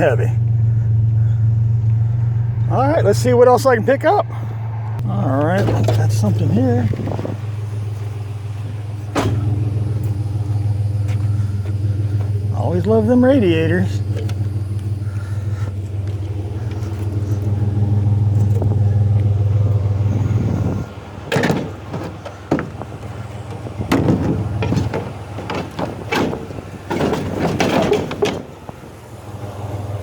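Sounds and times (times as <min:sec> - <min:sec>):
pickup truck engine running: 0:00.0 - 0:30.0
scrap metal knocks and clanks: 0:05.5 - 0:28.8.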